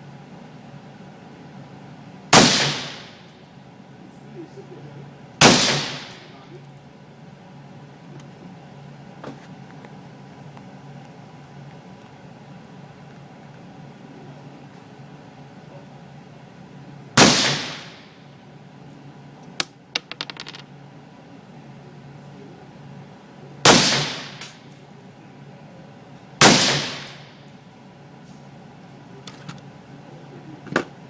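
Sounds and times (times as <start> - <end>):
suppressed rifle shots: 2.4 - 3.2, 5.4 - 6.3, 17.2 - 18.0, 23.6 - 24.6, 26.4 - 27.3.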